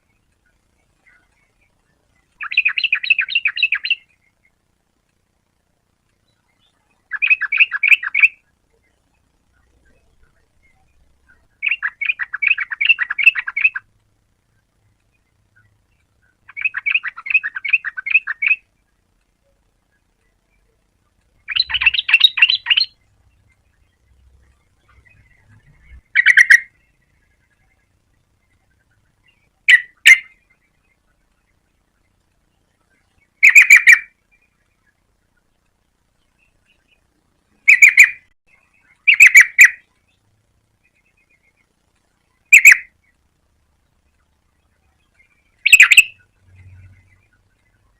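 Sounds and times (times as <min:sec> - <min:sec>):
bird chattering calls: 0:02.4 - 0:04.2, 0:06.6 - 0:08.5, 0:09.5 - 0:13.9, 0:15.6 - 0:18.7, 0:21.4 - 0:23.5, 0:24.8 - 0:27.6, 0:28.8 - 0:30.4, 0:33.4 - 0:34.2, 0:37.6 - 0:39.9, 0:42.4 - 0:43.0, 0:45.2 - 0:47.3
bird calling in quick notes: 0:15.6 - 0:18.7, 0:21.4 - 0:23.0, 0:24.8 - 0:26.8, 0:33.4 - 0:34.2, 0:37.7 - 0:39.9, 0:42.5 - 0:42.9, 0:45.6 - 0:47.1.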